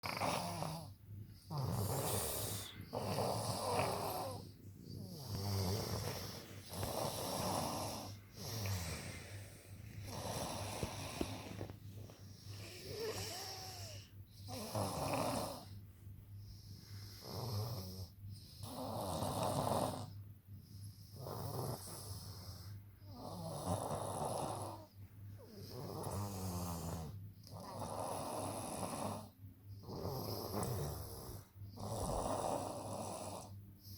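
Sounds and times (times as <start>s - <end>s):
person snoring: 0.0s - 0.9s, 1.5s - 9.4s, 10.0s - 11.7s, 12.5s - 15.7s
breathy hiss: 0.4s - 15.8s.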